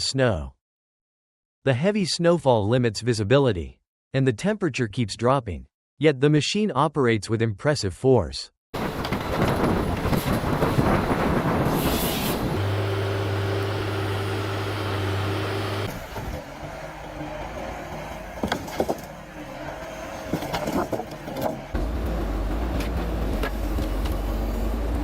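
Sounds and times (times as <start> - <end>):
forestry machine engine humming: 8.8 - 25.0.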